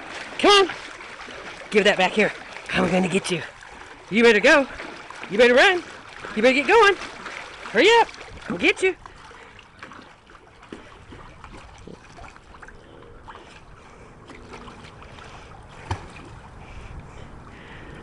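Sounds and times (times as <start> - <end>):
pool water lapping and sloshing: 0.0 - 18.0
small splashes: 0.0 - 18.0
sharp splash or knock: 15.8 - 16.4.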